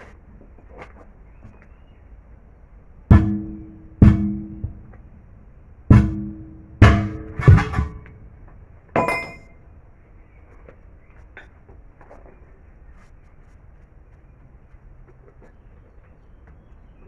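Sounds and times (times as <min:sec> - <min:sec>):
hard strikes on metal ringing: 0:03.1 - 0:05.1, 0:05.9 - 0:08.3, 0:09.0 - 0:09.5.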